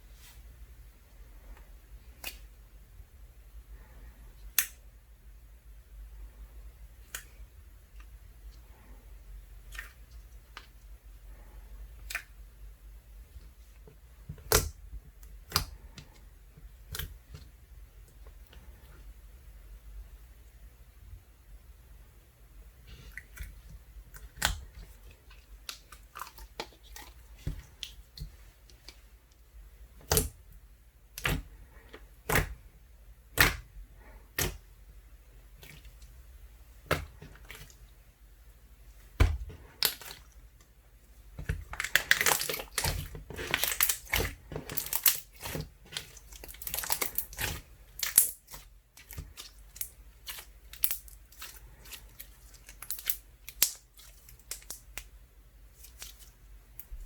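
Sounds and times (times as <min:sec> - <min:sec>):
slime clicking and popping: 0:41.4 - 0:52.0, 0:52.6 - 0:55.1.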